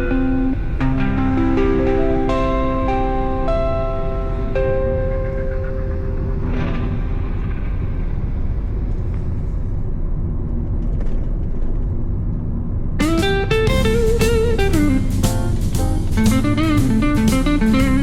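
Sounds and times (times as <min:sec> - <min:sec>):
blues electric guitar with bent notes: 0:00.0 - 0:08.3, 0:13.0 - 0:18.0
steady low rumble: 0:00.0 - 0:18.0.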